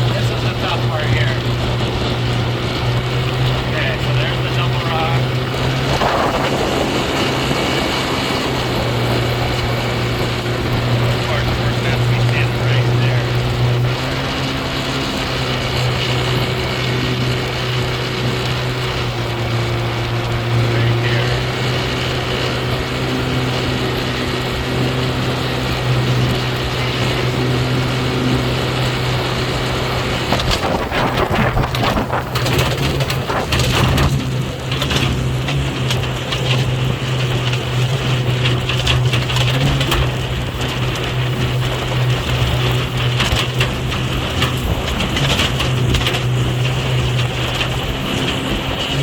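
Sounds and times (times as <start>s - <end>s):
boat motor running: 0.0s - 49.0s
water and air rushing: 0.0s - 49.0s
irregular crackling noise: 29.8s - 49.0s.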